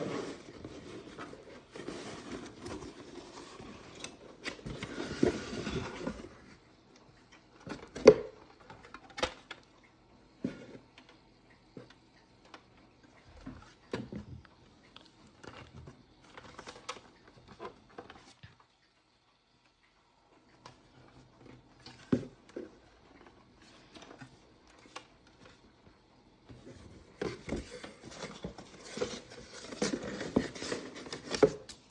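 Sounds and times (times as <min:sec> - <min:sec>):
rustling handling noise: 0:00.0 - 0:09.6, 0:26.5 - 0:31.9.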